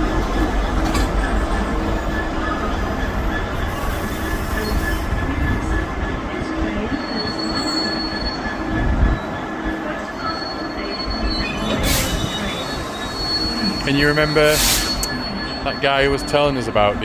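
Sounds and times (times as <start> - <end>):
train rumbling: 0.0 - 17.0
high wheel squeal: 6.9 - 9.4, 10.1 - 17.0.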